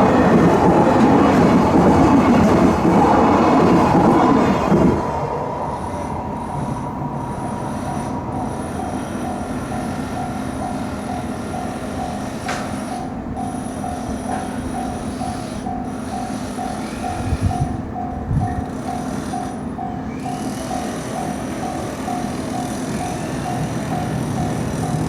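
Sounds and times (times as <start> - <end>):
train rumbling: 0.0 - 25.0
level crossing bell ringing: 6.6 - 25.0.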